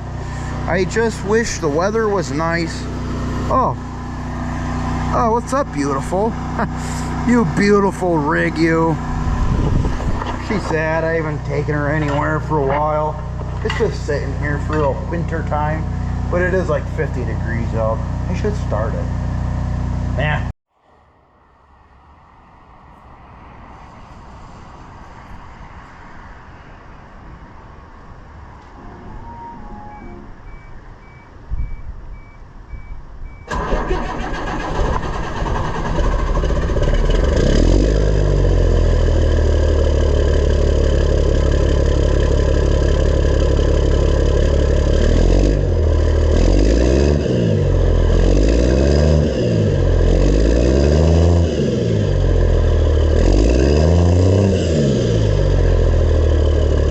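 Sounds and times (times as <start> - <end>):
diesel engine starting and idling: 0.0 - 20.5, 29.2 - 56.9
engine revving: 0.0 - 20.5, 33.5 - 56.9
beeps: 28.8 - 33.5.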